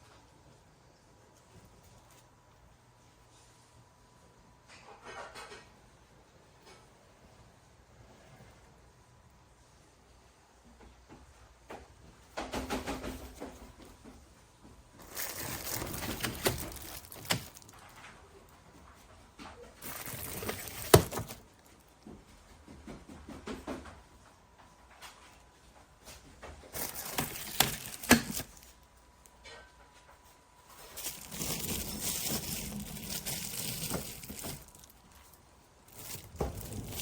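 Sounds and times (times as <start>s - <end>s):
rustling handling noise: 1.3s - 3.8s, 13.0s - 22.2s, 24.8s - 37.0s.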